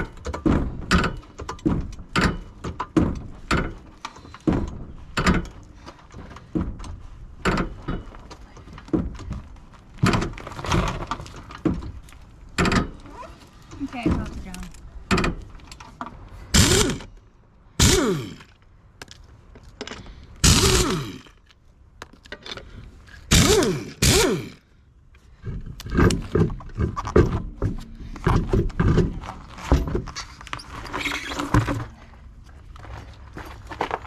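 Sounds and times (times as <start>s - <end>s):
impact wrench rapid hammering: 16.5s - 17.1s, 17.8s - 18.4s, 20.4s - 21.3s, 23.3s - 24.6s
impact wrench running: 16.5s - 17.1s, 17.8s - 18.4s, 20.4s - 21.3s, 23.3s - 24.6s.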